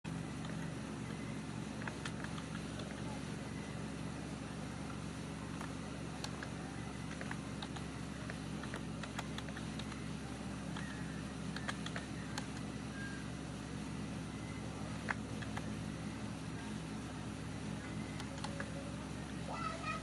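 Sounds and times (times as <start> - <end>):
steady low hum: 0.0 - 20.0
computer keyboard keystrokes: 1.8 - 3.0, 5.5 - 6.5, 7.1 - 10.0, 10.7 - 12.7, 15.0 - 15.7, 18.1 - 18.7.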